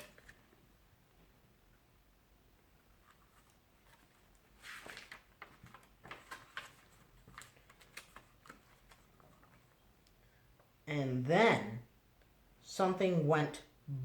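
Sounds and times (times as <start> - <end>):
book pages turning: 3.0 - 9.8.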